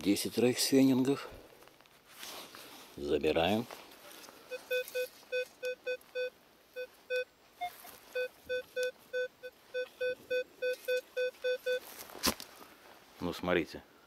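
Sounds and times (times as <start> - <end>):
metal detector beeping: 4.5 - 12.0.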